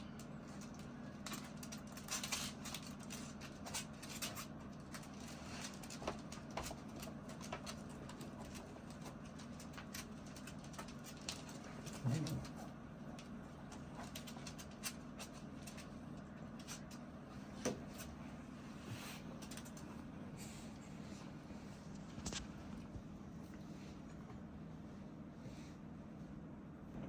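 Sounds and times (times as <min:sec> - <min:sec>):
small dogs clicking and pattering: 0:00.0 - 0:17.1
steady low hum: 0:00.0 - 0:27.0.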